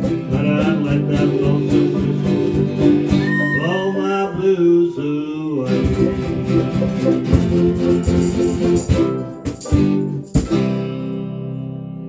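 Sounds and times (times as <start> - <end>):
guitars strumming chord: 0.0 - 4.5, 5.7 - 12.0
sharp percussion hits: 5.7 - 11.0.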